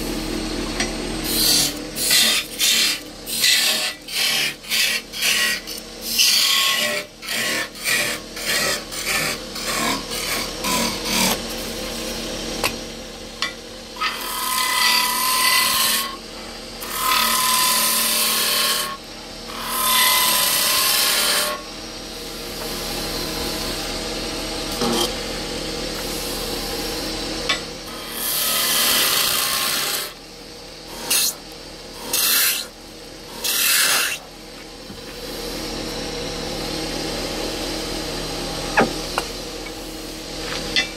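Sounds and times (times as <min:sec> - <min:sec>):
wood lathe motor running: 0:00.0 - 0:40.9
turning tool cutting wood: 0:01.2 - 0:11.5, 0:14.0 - 0:16.2, 0:16.8 - 0:21.8, 0:27.8 - 0:30.2, 0:30.9 - 0:34.3.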